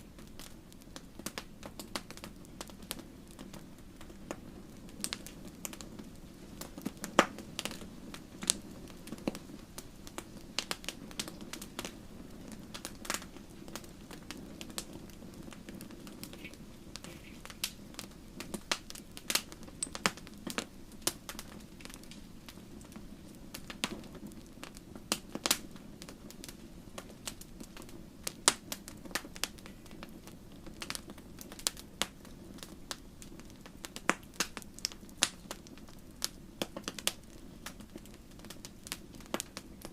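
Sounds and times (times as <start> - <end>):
fire crackling and popping: 0.0 - 39.9.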